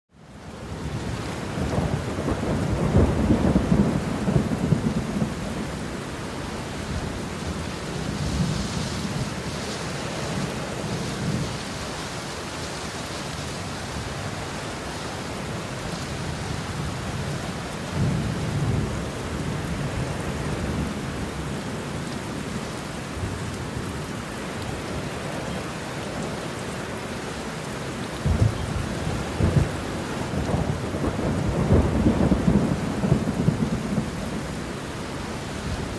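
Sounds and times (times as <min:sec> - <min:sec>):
steady rain: 0:00.1 - 0:35.9
thunder rumbling: 0:00.7 - 0:11.7, 0:15.5 - 0:21.6, 0:28.2 - 0:34.8.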